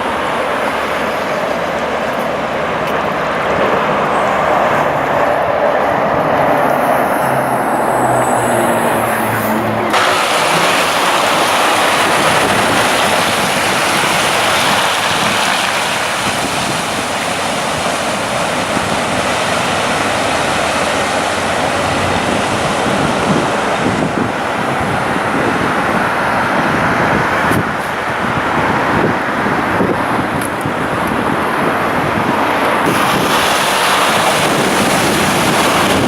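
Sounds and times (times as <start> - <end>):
wind: 0.0 - 36.0
choppy water: 9.0 - 36.0.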